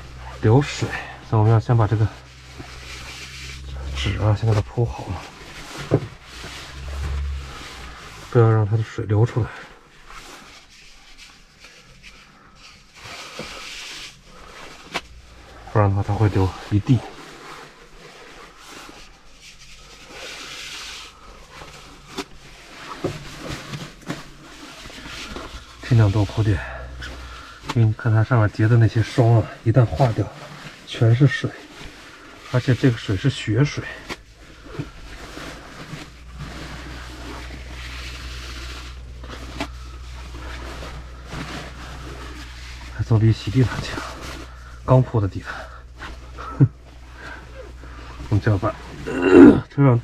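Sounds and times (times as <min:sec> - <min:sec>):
steady low hum: 0:00.0 - 0:50.0
paper rustling and crinkling: 0:09.9 - 0:44.9.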